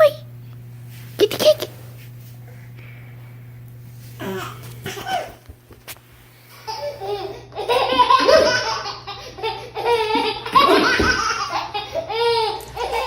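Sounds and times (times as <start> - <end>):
baby laughing hard: 6.6 - 13.0.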